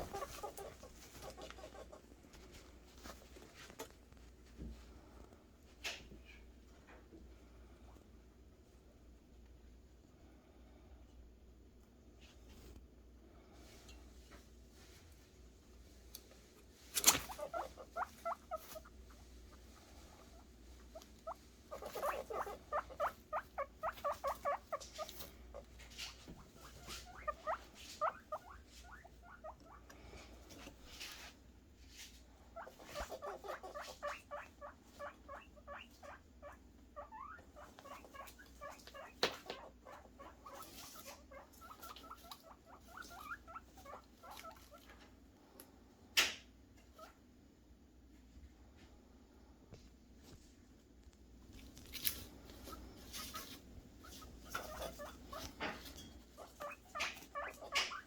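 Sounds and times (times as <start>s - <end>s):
guinea pigs squeaking: 0.0s - 3.8s, 16.9s - 31.4s, 32.0s - 45.0s, 46.2s - 47.2s, 51.6s - 58.0s.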